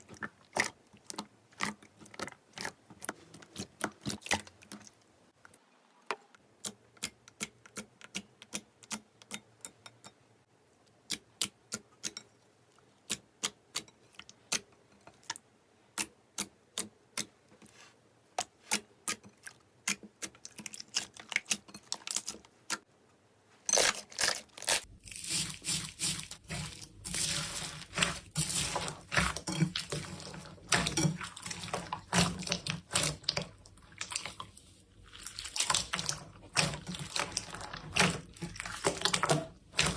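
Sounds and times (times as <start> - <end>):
slime squishing: 0.0 - 5.5, 23.8 - 39.9.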